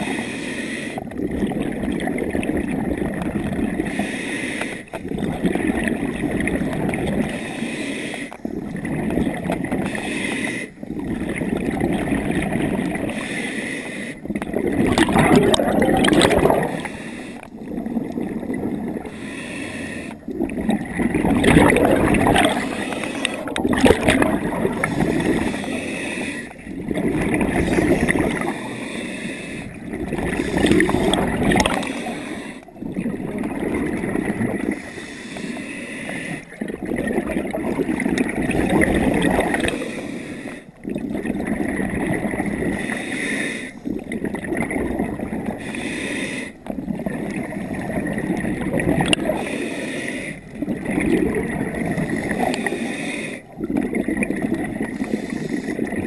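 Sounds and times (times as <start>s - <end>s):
diver breathing through regulator: 0.0s - 1.2s, 3.7s - 5.0s, 7.1s - 8.8s, 9.7s - 11.7s, 12.8s - 33.0s, 34.3s - 36.7s, 39.2s - 40.8s, 42.4s - 44.1s, 45.3s - 46.8s, 49.0s - 50.7s, 52.0s - 53.8s, 54.8s - 56.0s
exhaled bubbles gurgling: 0.0s - 56.0s.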